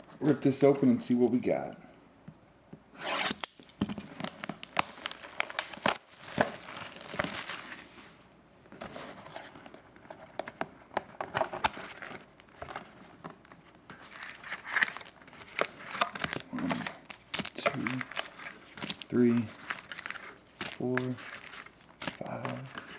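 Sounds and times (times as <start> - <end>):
cardboard and wrapping crinkling: 4.0 - 8.2, 8.8 - 22.9.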